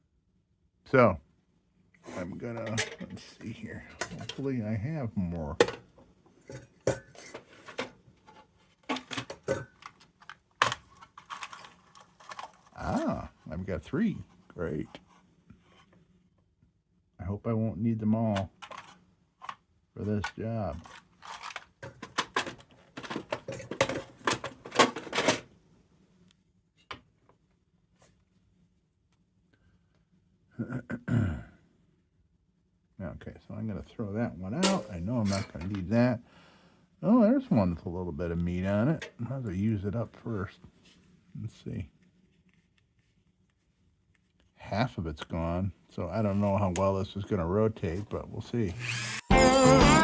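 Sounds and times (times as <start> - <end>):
rummaging through small parts: 2.5 - 3.2, 6.5 - 13.0, 18.5 - 19.0, 20.2 - 25.5, 34.6 - 35.8.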